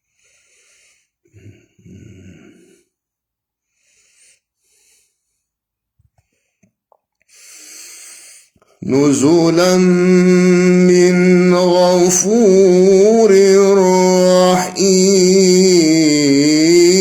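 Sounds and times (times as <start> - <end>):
man breathing: 0.0 - 1.9, 3.7 - 5.5.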